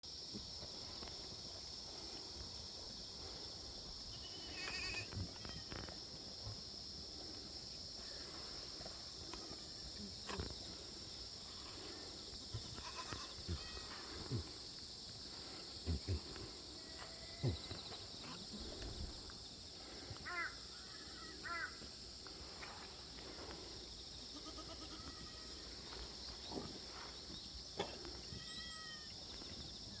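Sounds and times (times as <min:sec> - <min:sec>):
goats bleating: 0:12.5 - 0:14.2, 0:24.3 - 0:25.6.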